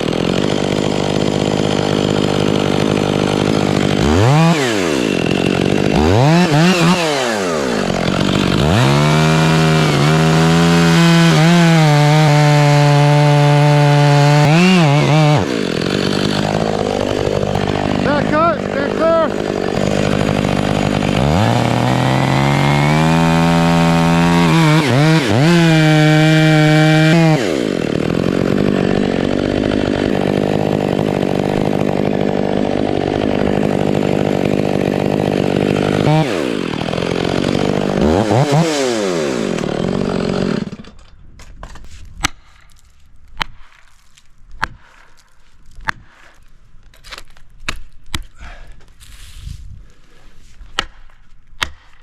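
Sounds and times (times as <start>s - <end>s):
chainsaw cutting wood: 0.0s - 48.6s, 50.6s - 52.0s.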